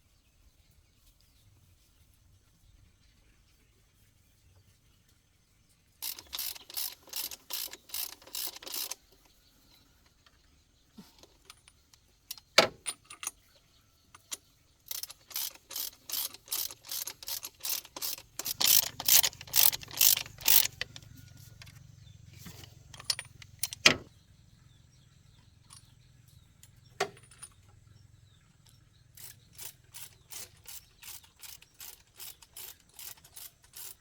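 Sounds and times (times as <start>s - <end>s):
ratchet wrench clicking: 6.0s - 9.2s, 14.2s - 21.9s, 22.5s - 24.0s, 29.2s - 34.0s.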